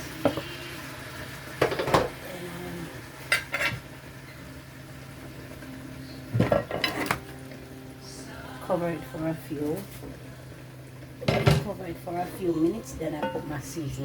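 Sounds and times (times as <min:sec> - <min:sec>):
metal utensil clanking on pot: 0:03.3 - 0:03.8, 0:06.4 - 0:07.2, 0:11.2 - 0:11.8, 0:13.1 - 0:13.7.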